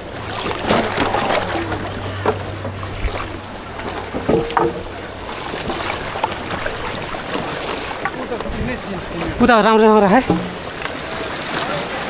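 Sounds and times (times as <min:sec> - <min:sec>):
river floodwater rushing: 0:00.0 - 0:12.0.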